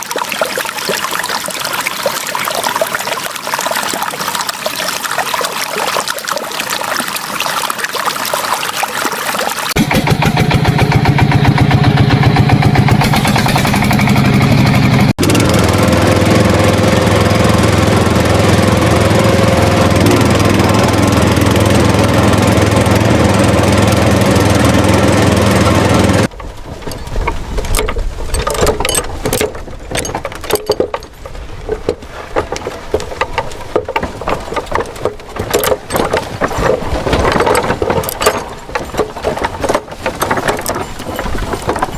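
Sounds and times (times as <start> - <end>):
knocks and clatter: 26.2 - 41.9.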